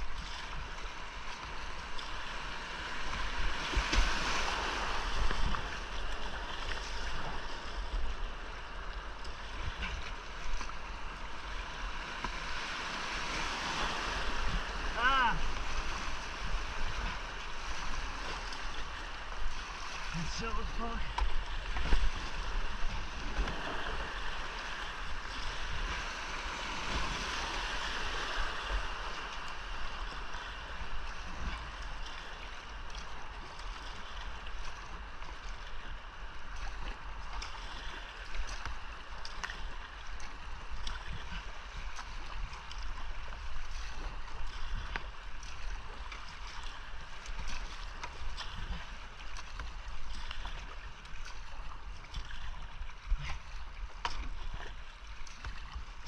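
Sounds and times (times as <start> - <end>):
rushing whitewater: 0.0 - 37.5
paddle splashes and knocks: 0.0 - 56.0.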